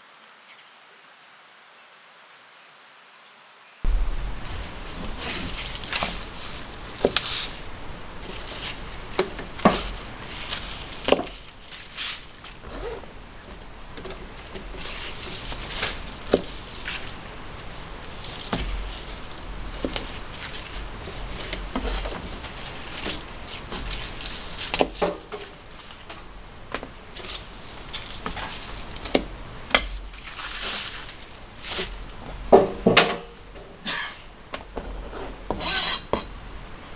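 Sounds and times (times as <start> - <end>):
soft hiss: 3.2 - 34.5
clinks and knocks of utensils: 14.0 - 26.2, 31.8 - 34.0, 35.5 - 36.4.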